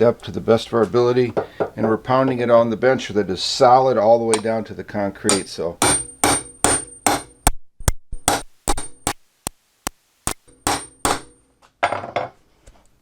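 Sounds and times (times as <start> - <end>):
hammer striking steel punch: 4.3 - 4.6, 5.3 - 7.6, 8.2 - 9.2, 10.3 - 11.4.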